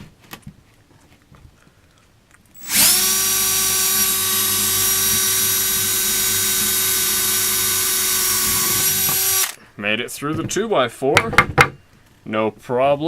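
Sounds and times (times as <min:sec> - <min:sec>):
electric drill drilling into wood: 0:02.6 - 0:09.6.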